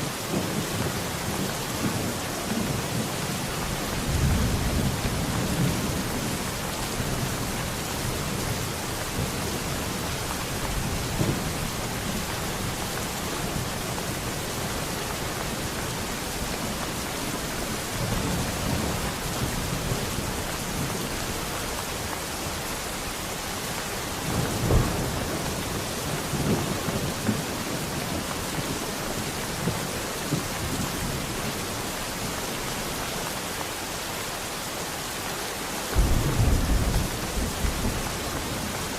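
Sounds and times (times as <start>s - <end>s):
rain falling: 0.0s - 38.9s
thunder rolling: 36.0s - 38.9s.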